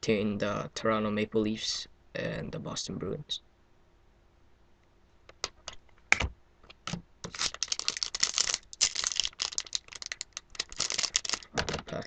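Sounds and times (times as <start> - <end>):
foil pack crinkling and tearing: 7.2 - 11.8.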